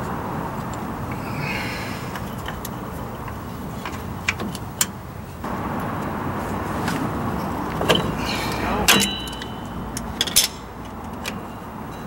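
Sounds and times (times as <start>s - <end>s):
steady background rumble: 0.0s - 12.0s
metal parts clicking and clinking: 8.8s - 12.0s.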